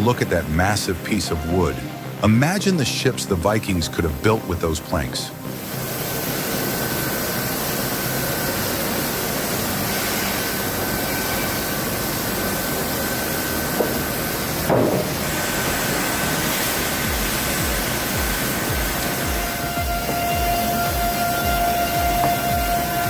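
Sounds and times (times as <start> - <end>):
sawmill machinery running: 0.0 - 23.0
thin high whine: 0.0 - 23.0
machinery knock: 14.7 - 15.3.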